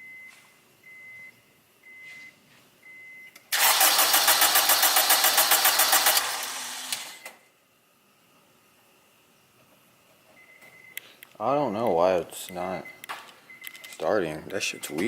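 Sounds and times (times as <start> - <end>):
starter cranking engine: 3.5 - 7.2
car warning chime beeping: 14.6 - 15.0.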